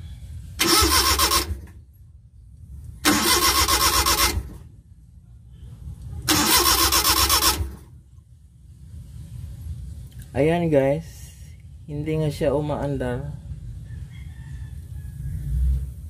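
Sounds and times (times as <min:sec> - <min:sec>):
engine cranking by starter motor: 0:00.6 - 0:01.8, 0:03.0 - 0:04.7, 0:06.2 - 0:07.9.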